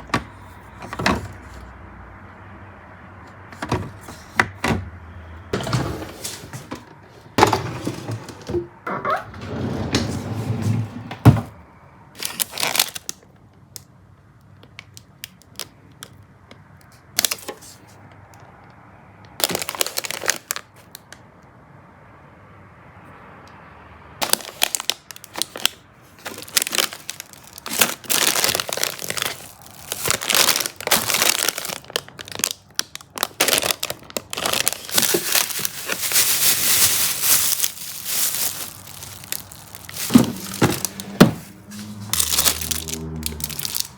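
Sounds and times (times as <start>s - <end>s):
plastic packaging crinkling: 12.2s - 13.3s, 19.4s - 20.9s, 24.2s - 43.9s.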